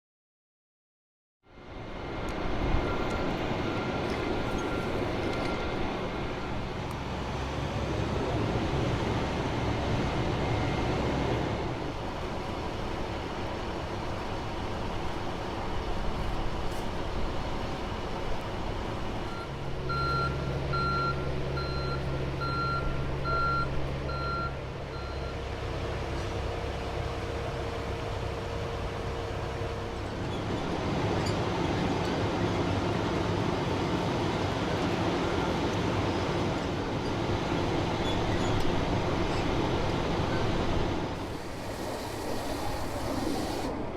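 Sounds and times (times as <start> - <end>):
heavy truck engines running: 1.6 - 43.9
reversing alarm beeping: 2.8 - 5.8, 19.3 - 25.4.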